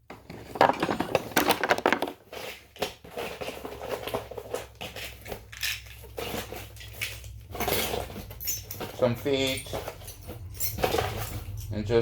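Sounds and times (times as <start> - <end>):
rustling and clatter: 0.0 - 11.8
metal tools clinking and knocking: 0.2 - 2.5, 3.2 - 12.0.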